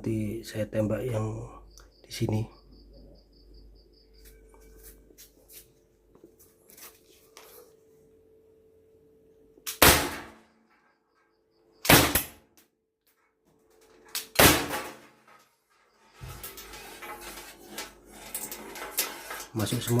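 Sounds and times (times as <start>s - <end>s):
air rifle shots: 9.7s - 10.4s, 11.8s - 12.4s, 14.2s - 15.0s.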